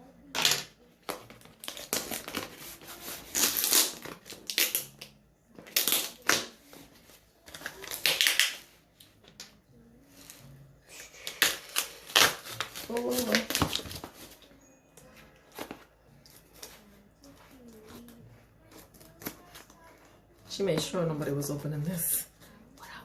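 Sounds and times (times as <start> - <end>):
packaging crinkling and tearing: 1.0 - 6.6, 7.4 - 8.8, 11.1 - 14.5.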